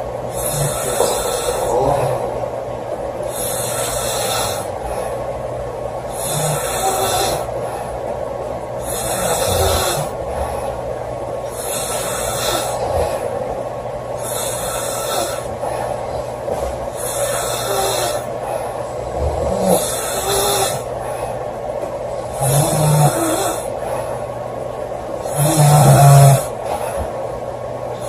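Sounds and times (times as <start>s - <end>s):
steady low hum: 0.0s - 28.0s
woman snoring loudly: 0.3s - 2.3s, 3.3s - 4.9s, 6.1s - 7.5s, 8.8s - 10.6s, 11.5s - 13.3s, 14.2s - 15.8s, 16.6s - 18.3s, 19.0s - 20.9s, 22.3s - 23.8s, 25.2s - 27.0s.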